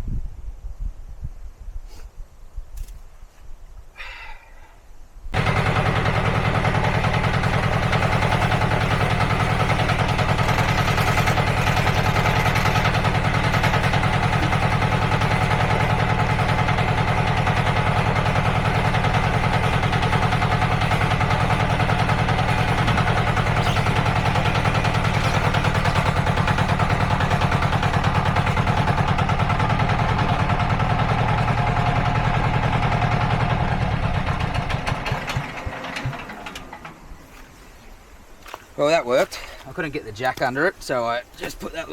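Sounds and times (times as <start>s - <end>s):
skid steer engine running: 5.3s - 37.6s.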